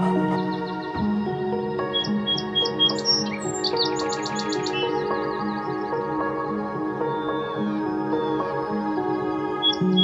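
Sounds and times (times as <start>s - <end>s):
music with sustained notes: 0.0s - 10.0s
high bird-like chirps: 1.9s - 5.8s.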